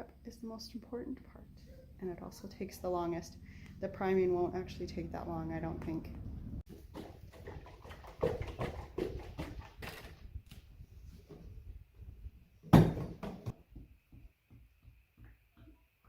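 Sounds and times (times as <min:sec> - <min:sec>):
objects knocking and clattering: 0:06.7 - 0:10.3, 0:12.7 - 0:14.3.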